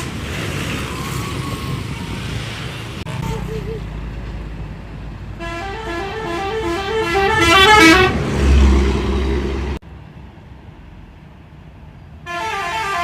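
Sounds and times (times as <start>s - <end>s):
bus engine rumble: 0.0s - 13.0s
musical air horns playing tune: 5.4s - 8.2s, 12.3s - 13.0s.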